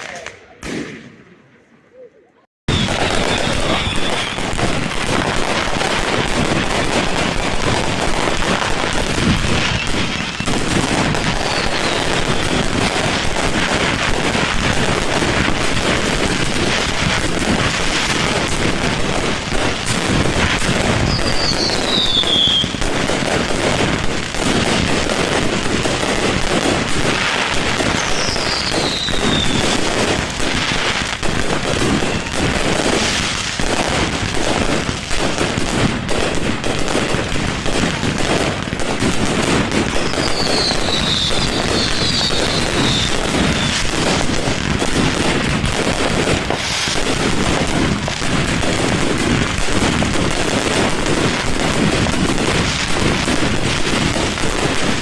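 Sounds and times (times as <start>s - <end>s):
fireworks bangs and crackling: 0.0s - 55.0s
falling firework whistles: 2.7s - 5.5s, 9.3s - 13.1s, 20.6s - 22.9s, 27.4s - 30.2s, 39.8s - 44.2s.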